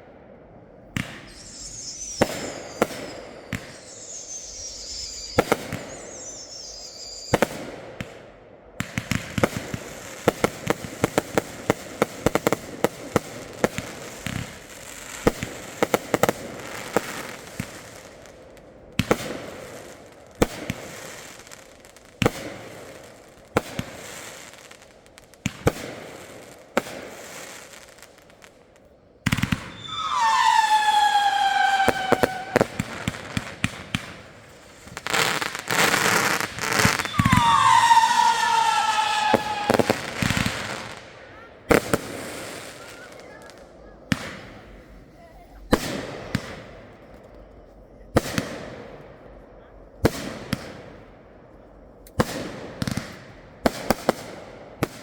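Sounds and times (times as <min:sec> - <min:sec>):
fireworks bangs and crackles: 0:00.0 - 0:55.0
descending firework whistle: 0:01.0 - 0:07.9, 0:29.3 - 0:44.4.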